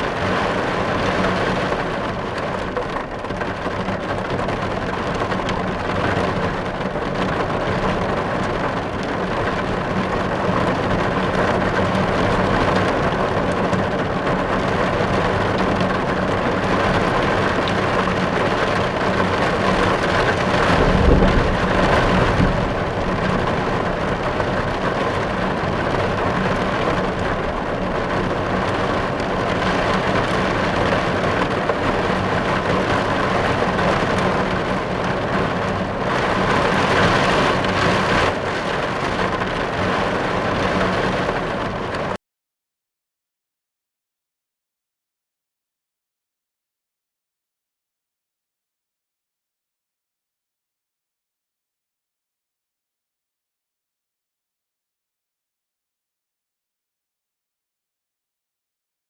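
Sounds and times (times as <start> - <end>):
steady rain falling: 0.0 - 42.2
low rumble: 19.8 - 28.5.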